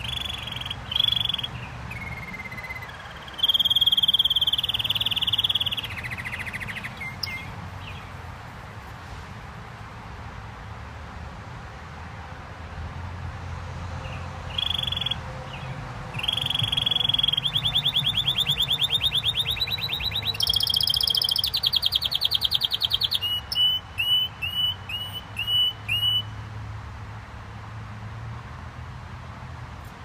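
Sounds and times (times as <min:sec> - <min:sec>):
canary singing: 0:00.0 - 0:08.2, 0:14.1 - 0:26.4.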